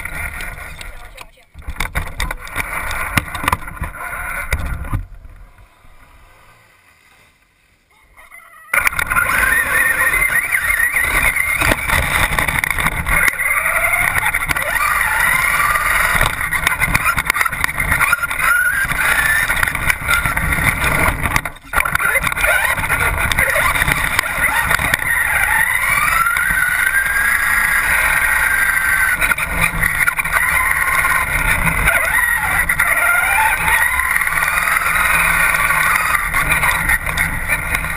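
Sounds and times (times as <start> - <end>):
rc car chassis rumbling and rattling: 0.0 - 6.7, 8.7 - 37.9
electric motor whine: 8.8 - 37.9.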